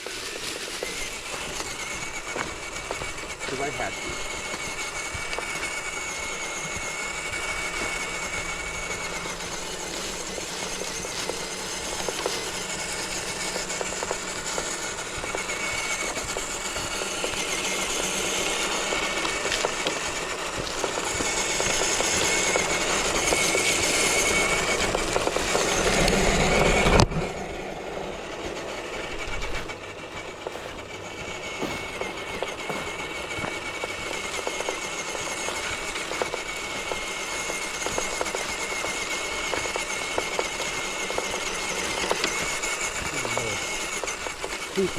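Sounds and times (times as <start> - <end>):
toy truck electric motor whining: 0.0 - 44.9.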